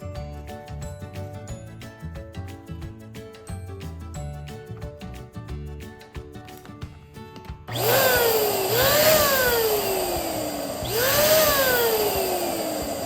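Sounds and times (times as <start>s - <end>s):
background music with a beat: 0.0s - 13.0s
balloon inflator blowing air: 7.7s - 13.0s.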